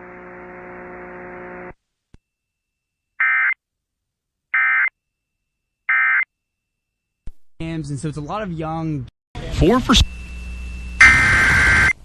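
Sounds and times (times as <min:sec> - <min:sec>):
steady hum: 0:09.4 - 0:12.0
harsh digital data bursts: 0:11.0 - 0:12.0.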